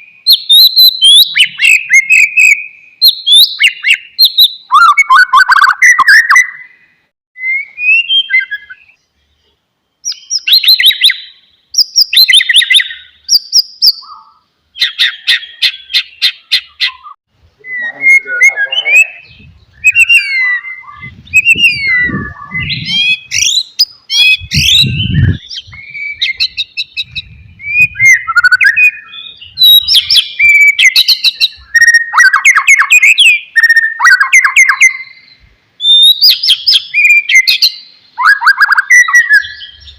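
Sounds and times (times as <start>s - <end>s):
songbird singing: 0.0s - 39.9s
low rumble: 20.9s - 23.3s, 24.4s - 26.0s.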